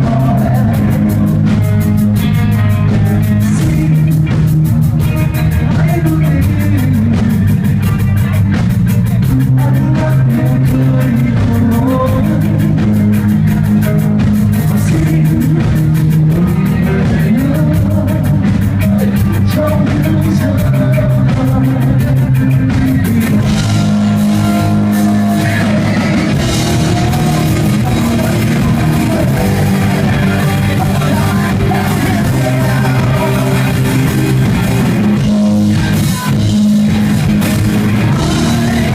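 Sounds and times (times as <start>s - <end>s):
drum kit: 0.0s - 38.9s
electric guitar: 0.0s - 38.9s.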